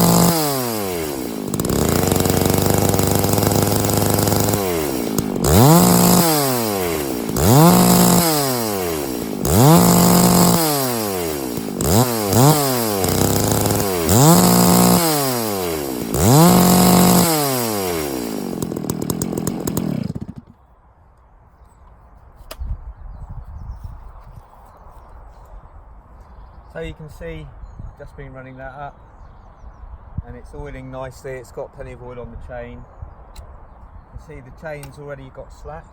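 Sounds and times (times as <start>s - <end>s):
chainsaw revving: 0.0s - 20.6s.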